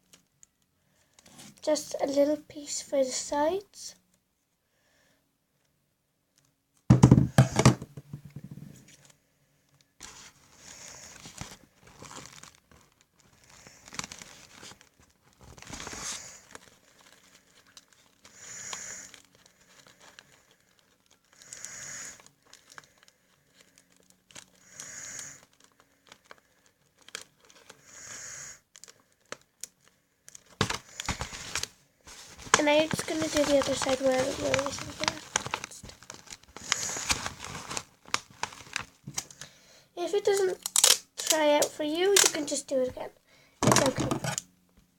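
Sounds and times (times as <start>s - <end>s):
paper crinkling and tearing: 10.0s - 27.8s, 28.7s - 39.4s, 40.0s - 42.7s, 43.7s - 44.4s.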